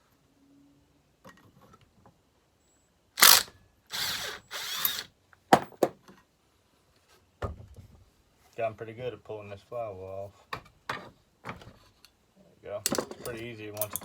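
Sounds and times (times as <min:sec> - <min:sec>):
mechanical bursts: 0:03.2 - 0:05.1
sharp tool clicks: 0:03.2 - 0:05.1.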